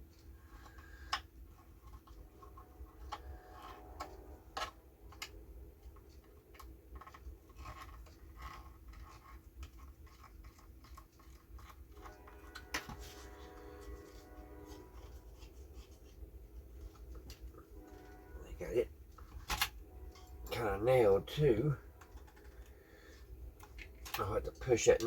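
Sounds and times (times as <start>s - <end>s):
clicks and scrapes on wooden case: 7.0s - 16.2s.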